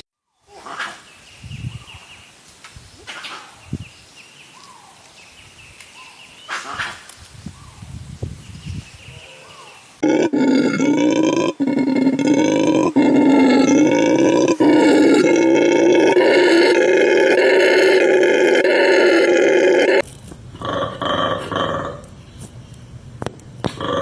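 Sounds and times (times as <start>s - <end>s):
long steady animal call: 9.1s - 23.0s, 23.6s - 24.0s.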